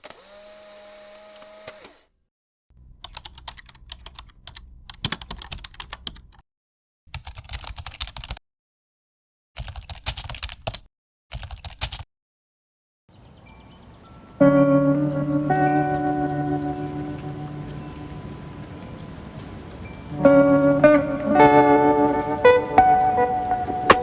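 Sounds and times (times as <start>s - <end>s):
keyboard typing clicks: 3.0s - 6.4s, 7.1s - 8.4s, 9.6s - 12.0s.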